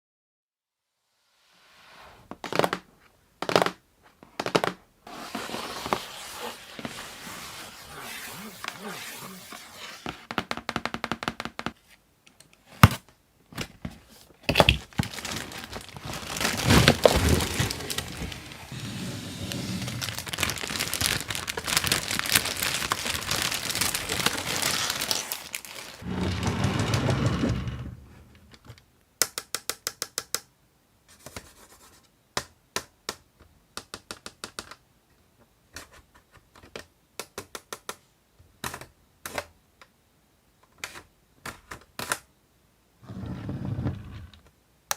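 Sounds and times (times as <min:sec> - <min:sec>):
packaging crinkling and tearing: 0:14.5 - 0:26.5.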